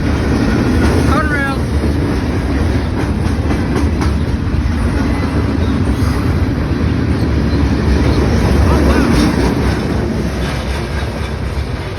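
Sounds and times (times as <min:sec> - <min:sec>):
train wheels rumbling on rails: 0:00.0 - 0:11.9.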